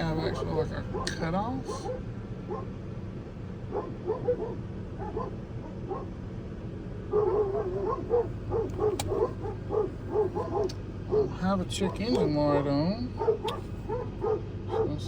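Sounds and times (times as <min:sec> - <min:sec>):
steady low hum: 0:00.0 - 0:15.0
dog whining and yipping: 0:03.7 - 0:06.1, 0:07.1 - 0:11.4, 0:13.2 - 0:14.9.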